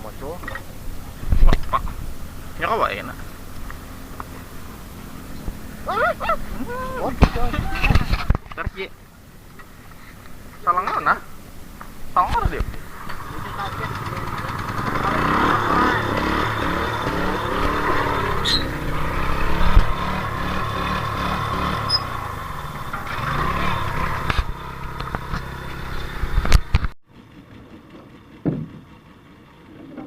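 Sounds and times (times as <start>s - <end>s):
engine running: 0.0s - 30.0s
knocks: 28.4s - 28.8s.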